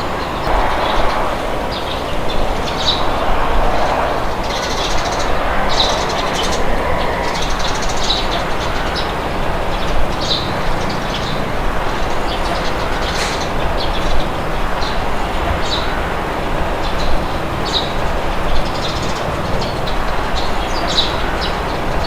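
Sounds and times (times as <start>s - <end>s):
wind rushing: 0.0s - 10.8s.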